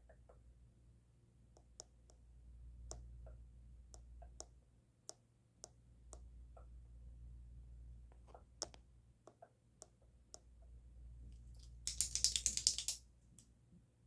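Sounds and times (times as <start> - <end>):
pen clicking: 11.9 - 13.0.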